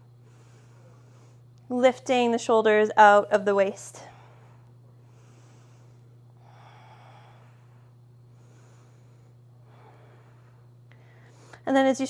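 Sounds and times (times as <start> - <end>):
low electrical hum: 0.0 - 12.0
slow breathing: 0.2 - 1.6, 4.0 - 11.7.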